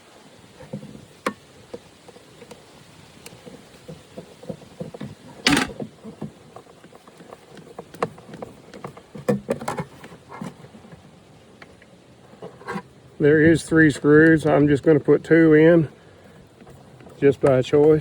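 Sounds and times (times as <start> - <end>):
hands handling plastic tank: 3.3 - 14.5.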